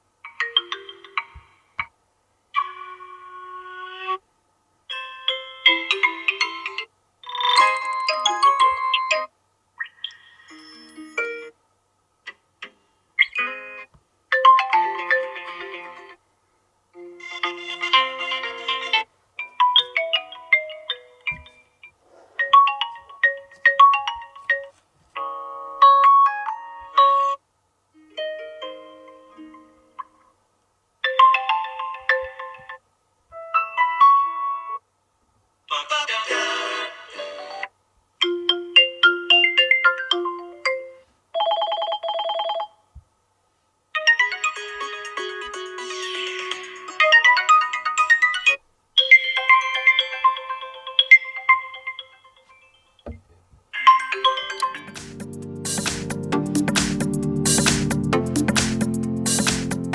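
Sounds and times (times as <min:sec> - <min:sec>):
ringtone melody: 0:00.3 - 0:01.3, 0:05.0 - 0:09.3, 0:17.0 - 0:21.6, 0:44.0 - 0:53.1, 0:53.8 - 0:59.9
busier ringtone melody: 0:05.0 - 0:09.3, 0:17.0 - 0:21.6, 0:44.0 - 0:53.0, 0:53.8 - 0:59.9
phone ringtones: 0:41.4 - 0:42.8.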